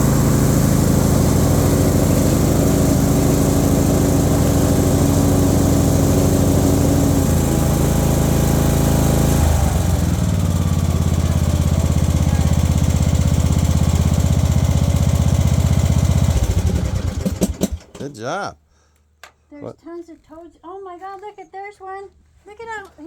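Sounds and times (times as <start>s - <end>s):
riding lawnmower engine running: 0.0s - 18.1s.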